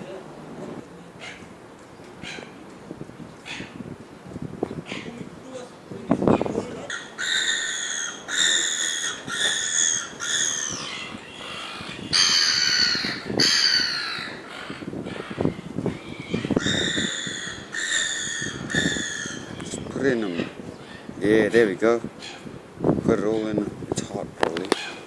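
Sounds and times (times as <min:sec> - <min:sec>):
seagulls calling: 0:06.3 - 0:22.5, 0:24.6 - 0:25.0.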